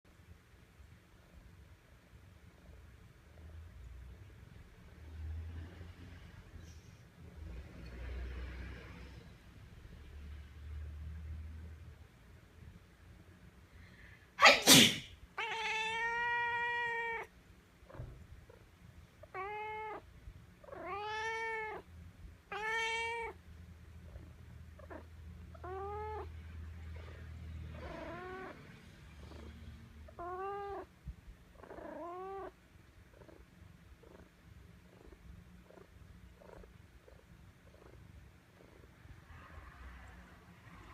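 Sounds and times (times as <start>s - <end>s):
person sneezing: 14.4s - 15.2s
cat meowing: 15.4s - 17.3s, 19.2s - 21.9s, 22.5s - 23.4s, 24.8s - 26.3s, 27.7s - 28.6s, 30.1s - 30.9s, 31.6s - 33.3s.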